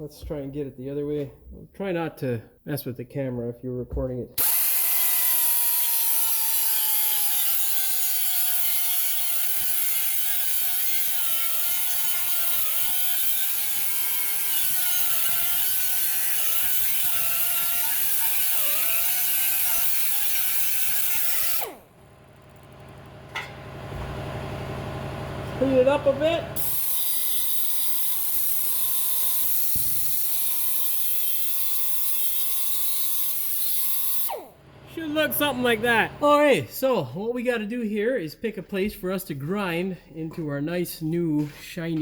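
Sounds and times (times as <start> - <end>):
cut-off wheel grinding steel: 4.4 - 24.2, 25.4 - 36.3.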